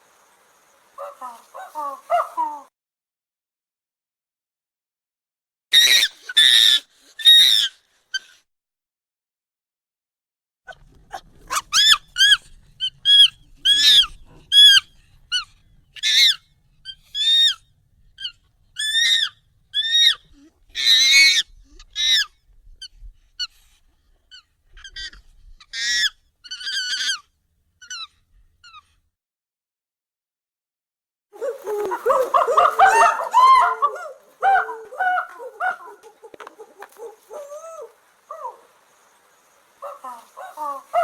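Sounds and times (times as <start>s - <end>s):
high-pitched monkey calls: 1.0s - 2.7s, 5.8s - 8.4s, 11.1s - 17.6s, 18.2s - 22.4s, 24.3s - 28.9s, 31.4s - 39.1s, 39.8s - 41.0s.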